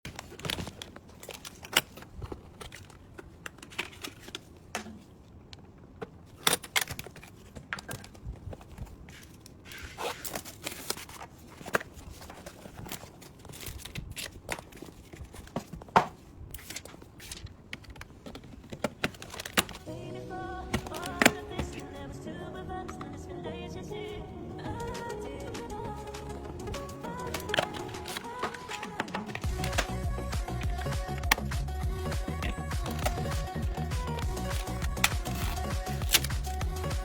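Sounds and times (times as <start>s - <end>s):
parts clicking and tapping: 24.6s - 37.0s
packaging crinkling: 32.4s - 37.0s.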